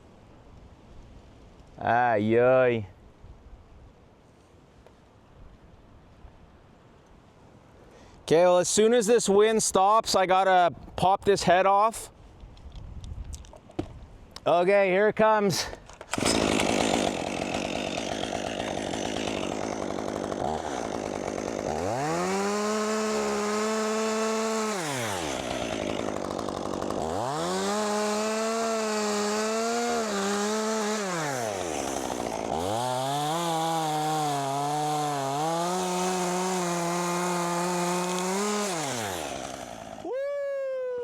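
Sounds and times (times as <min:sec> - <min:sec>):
chainsaw revving while cutting: 0:16.1 - 0:40.1.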